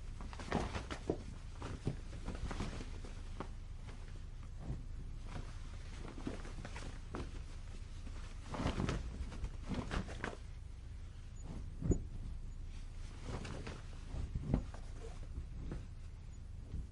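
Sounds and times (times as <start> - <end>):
cloth flapping in wind: 0.0 - 16.9.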